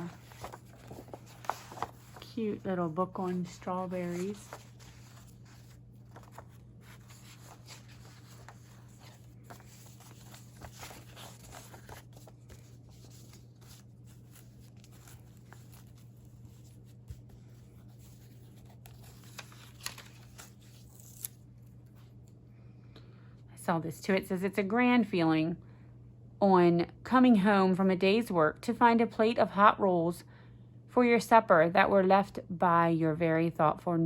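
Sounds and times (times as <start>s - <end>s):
paper pages turning: 0.0s - 22.2s
steady low hum: 0.0s - 34.0s.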